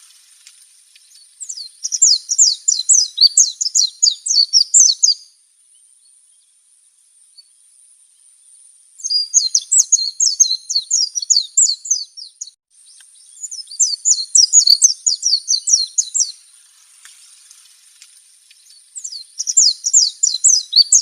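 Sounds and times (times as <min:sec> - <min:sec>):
faint high-pitched hiss: 0:00.0 - 0:21.0
bird twittering: 0:01.1 - 0:05.3, 0:09.0 - 0:16.6, 0:18.6 - 0:21.0.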